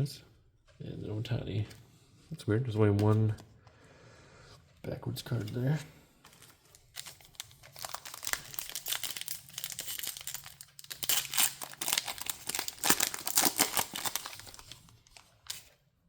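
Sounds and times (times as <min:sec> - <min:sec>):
foil wrapper crinkling and tearing: 0:06.7 - 0:15.7.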